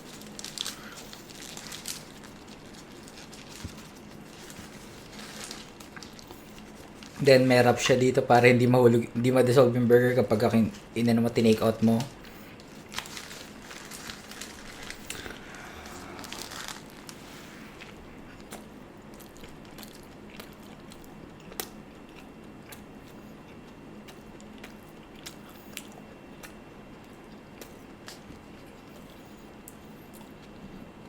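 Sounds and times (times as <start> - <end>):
biting and chewing: 0.0 - 7.9, 12.1 - 30.9
paper wrapper crinkling: 0.0 - 8.2, 11.4 - 18.6.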